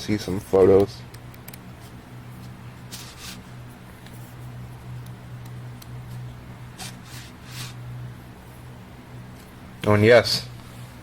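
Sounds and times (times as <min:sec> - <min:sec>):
steady low hum: 0:00.0 - 0:11.0
book pages turning: 0:06.1 - 0:07.8.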